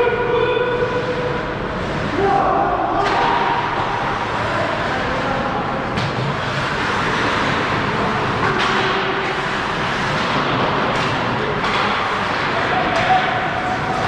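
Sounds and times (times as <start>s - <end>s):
skates scraping on ice: 6.1s - 14.0s
stick and puck knocks: 8.4s - 9.4s, 10.2s - 14.0s.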